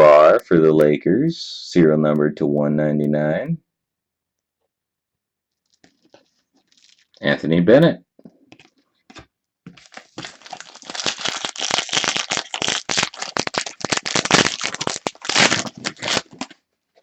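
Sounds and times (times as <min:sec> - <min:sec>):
foil wrapper crinkling and tearing: 0:05.7 - 0:07.2, 0:09.7 - 0:16.6.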